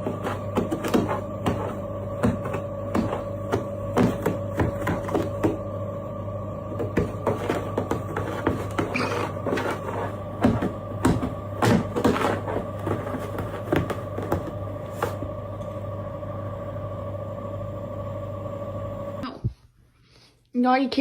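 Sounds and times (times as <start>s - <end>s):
steady motor hum: 0.0s - 19.3s.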